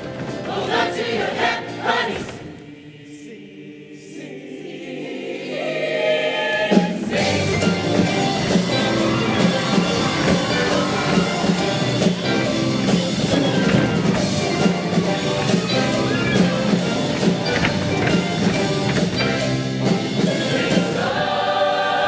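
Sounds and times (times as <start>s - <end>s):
choir holding a soft chord: 0.5s - 12.0s, 19.8s - 22.0s
band playing with drum beat: 6.7s - 21.1s.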